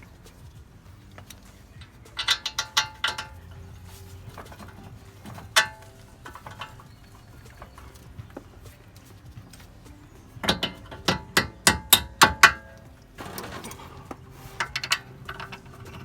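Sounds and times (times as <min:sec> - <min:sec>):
metal tools clanking: 0:00.0 - 0:16.0.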